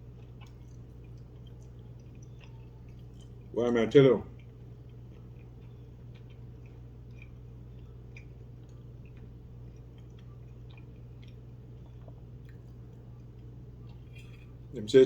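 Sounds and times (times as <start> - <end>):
person chewing food: 0.0 - 3.6, 4.2 - 14.8
low electrical hum: 0.0 - 15.0.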